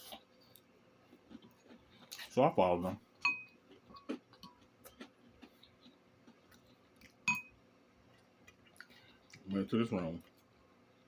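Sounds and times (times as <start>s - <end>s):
chewing with mouth clicks: 0.0s - 2.4s, 3.5s - 7.3s, 8.0s - 9.6s.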